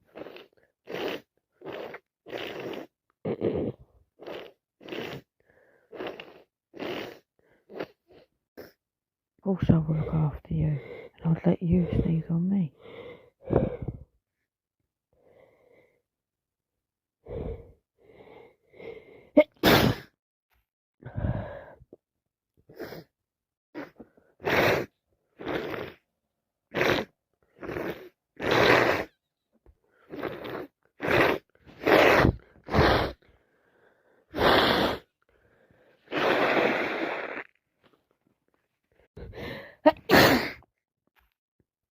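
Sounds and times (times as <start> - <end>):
gasping breaths: 10.0 - 11.2, 11.8 - 14.2, 39.1 - 39.8
woman sneezing: 19.4 - 20.1, 39.9 - 40.6.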